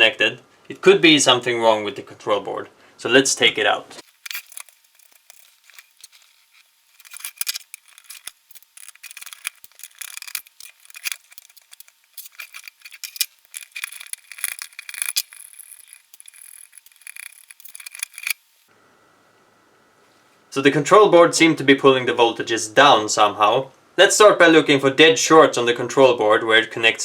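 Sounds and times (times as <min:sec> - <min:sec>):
circuit board clicks and rattles: 0:04.0 - 0:18.4.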